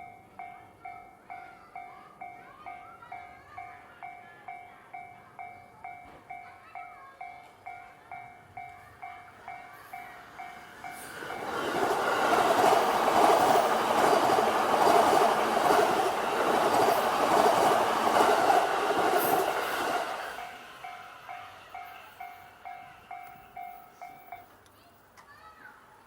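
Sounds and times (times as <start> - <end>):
level crossing warning bell: 0.0 - 24.7
train rumble and wheel clatter: 6.0 - 24.6.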